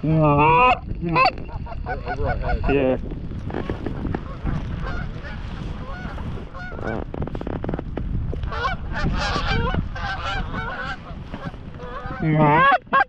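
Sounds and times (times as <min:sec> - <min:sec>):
wind buffeting microphone: 0:00.0 - 0:13.0
geese honking: 0:00.3 - 0:02.8, 0:04.2 - 0:07.0, 0:08.5 - 0:13.0.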